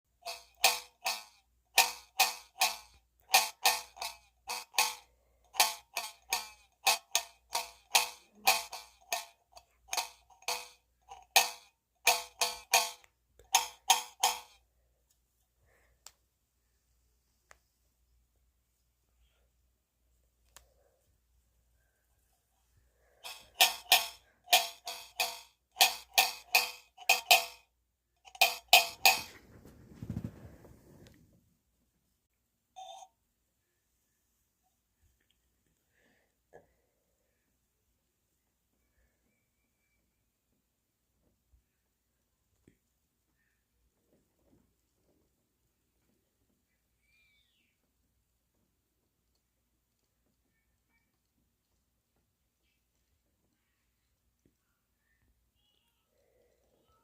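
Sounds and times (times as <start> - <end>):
metal can pinging: 0.2 - 14.6, 28.2 - 29.4.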